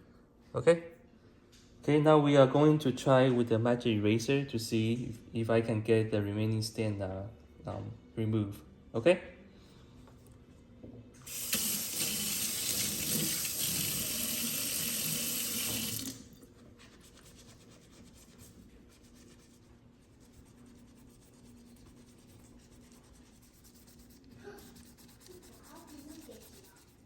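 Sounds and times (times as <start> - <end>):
tap water running into sink: 11.3 - 16.3
rubbing and scrubbing: 16.6 - 27.0.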